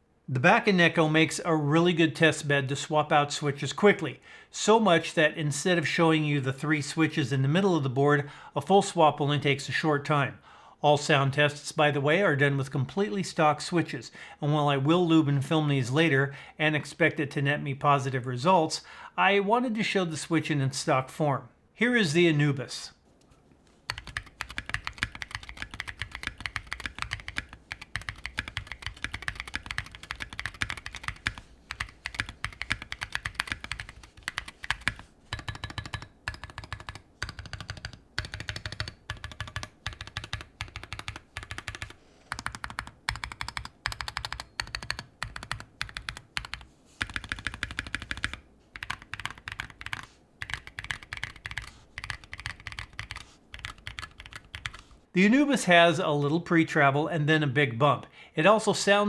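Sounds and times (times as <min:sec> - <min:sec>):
mechanical keyboard typing: 0:23.9 - 0:54.8.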